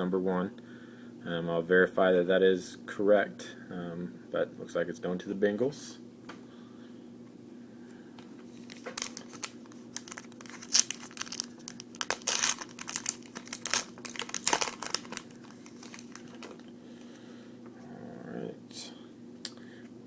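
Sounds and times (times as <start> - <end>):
foil wrapper tearing and crinkling: 8.6 - 16.7.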